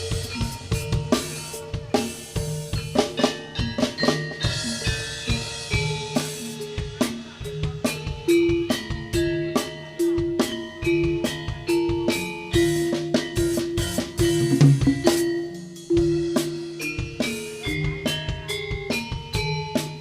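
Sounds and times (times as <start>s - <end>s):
quick dense drumming: 13.3s - 15.4s.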